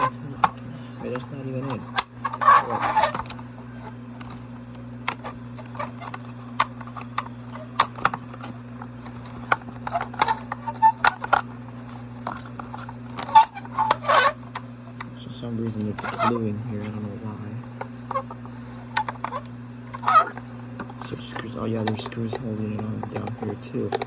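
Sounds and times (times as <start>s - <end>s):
steady low hum: 0.0s - 24.0s
plastic parts clicking and knocking: 5.0s - 11.5s, 17.8s - 24.0s.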